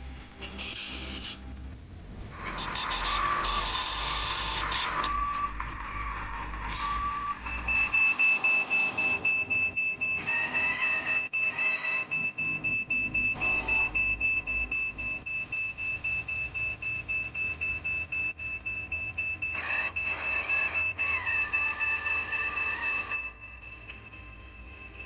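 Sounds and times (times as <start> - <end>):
grinding gear noise: 2.4 - 9.0, 19.5 - 23.3
electric motors whining: 2.6 - 14.6, 19.3 - 24.8.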